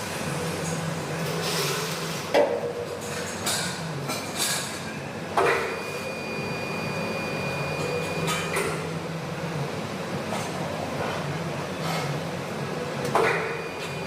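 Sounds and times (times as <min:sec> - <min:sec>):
workshop background noise: 0:00.0 - 0:14.0
thin high ringing tone: 0:05.7 - 0:08.6.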